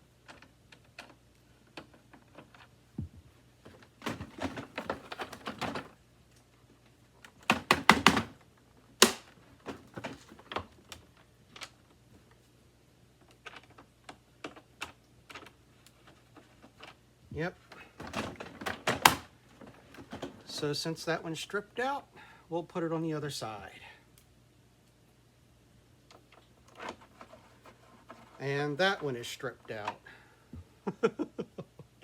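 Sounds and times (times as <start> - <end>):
plastic vacuum housing clicks and knocks: 7.2 - 8.4
rapid clicking and rattling: 7.4 - 8.4.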